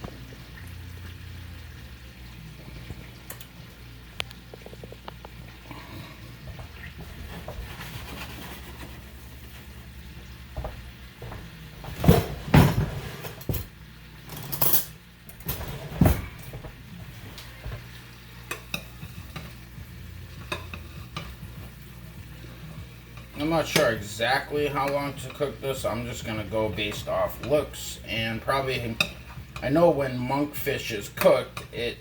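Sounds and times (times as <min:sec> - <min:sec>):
kitchenware knocking and clattering: 0:11.9 - 0:13.7
fish sizzling in a pan: 0:17.4 - 0:31.9.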